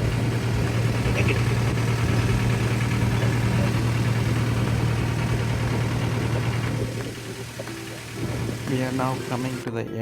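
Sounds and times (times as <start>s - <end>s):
motorboat engine running: 0.0s - 9.8s.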